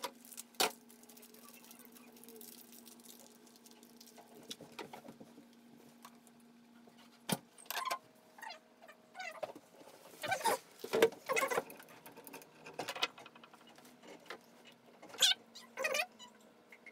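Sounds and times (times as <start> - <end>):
faint steady hum: 0.0 - 16.9
metal parts scraping and squeaking: 11.3 - 12.4, 15.1 - 16.4.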